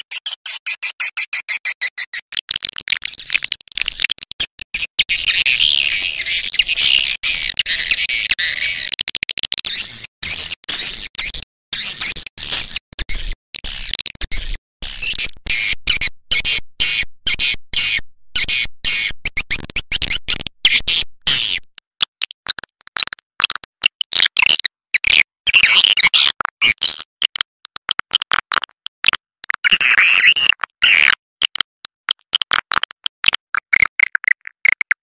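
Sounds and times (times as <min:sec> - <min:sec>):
recorded swiftlet twittering: 0:04.7 - 0:08.9, 0:11.8 - 0:21.6.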